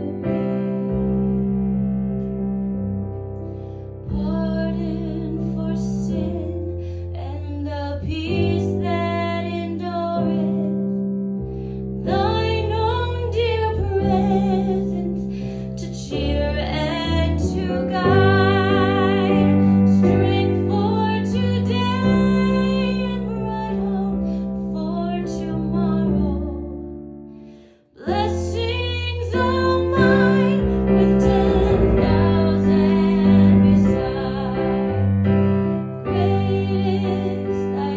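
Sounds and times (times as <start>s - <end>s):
woman singing with vibrato: 28.0s - 34.8s, 36.1s - 37.9s.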